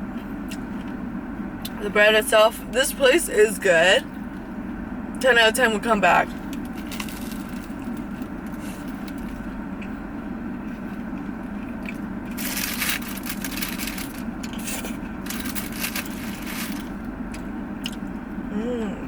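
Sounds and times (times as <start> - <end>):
steady low hum: 0.0 - 19.0
crunchy bread being chewed: 6.4 - 18.2.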